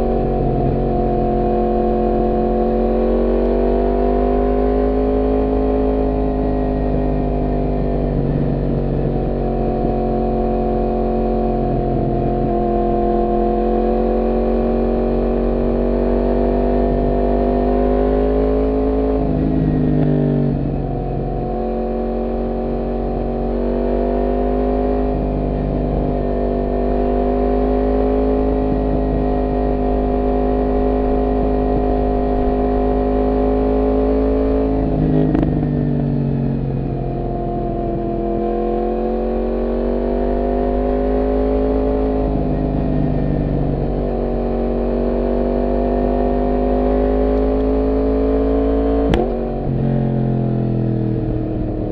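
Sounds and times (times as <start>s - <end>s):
motorcycle engine running: 0.0s - 51.9s.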